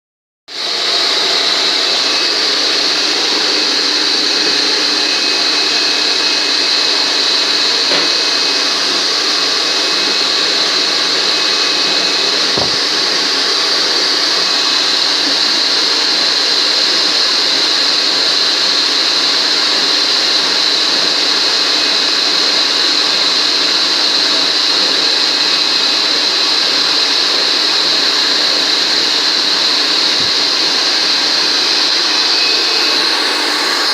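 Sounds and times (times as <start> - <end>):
vacuum cleaner running: 0.5 - 33.9.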